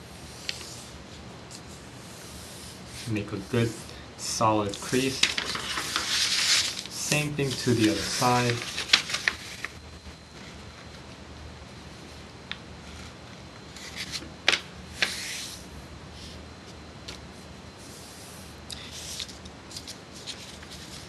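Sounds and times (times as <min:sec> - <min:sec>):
paper being folded and creased: 0:04.8 - 0:09.8.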